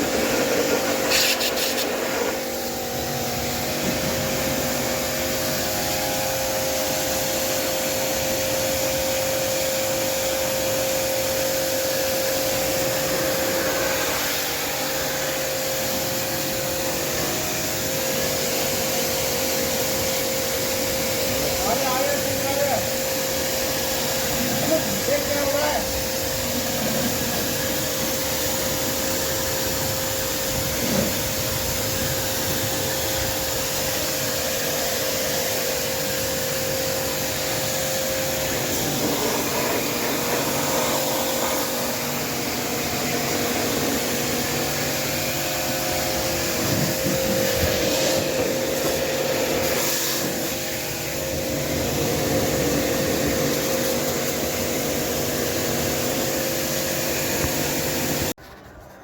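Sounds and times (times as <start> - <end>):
small electric motor running: 10.4 - 58.3.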